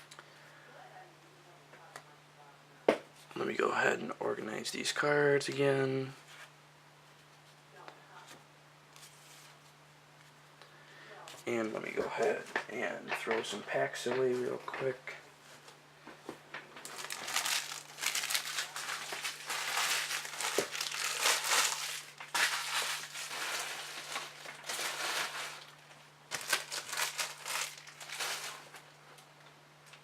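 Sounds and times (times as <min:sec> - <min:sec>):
foil wrappers crinkling: 0:16.5 - 0:30.0.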